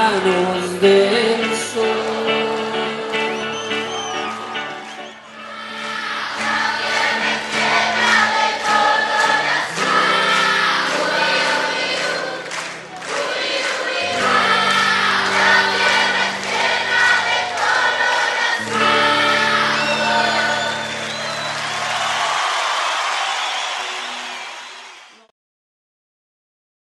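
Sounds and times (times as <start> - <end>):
choir singing held notes: 1.4 - 22.5.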